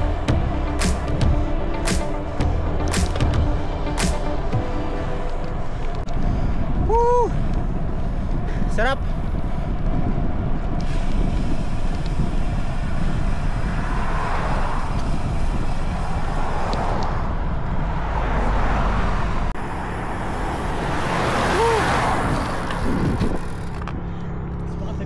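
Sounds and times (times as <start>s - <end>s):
road traffic noise: 0.0s - 25.0s
wind rushing over microphone: 4.3s - 24.0s.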